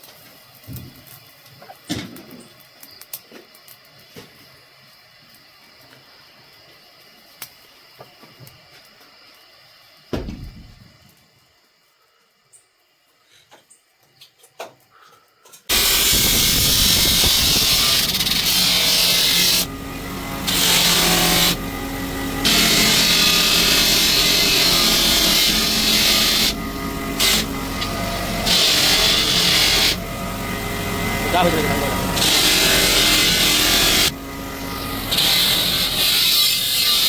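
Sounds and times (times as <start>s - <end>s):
grinder grinding metal: 15.7s - 37.0s.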